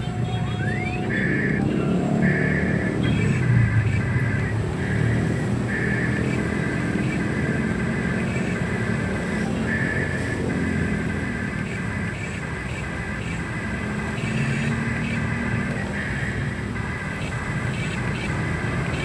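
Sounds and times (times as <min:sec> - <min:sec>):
small electric motors whining: 0:04.4 - 0:19.0.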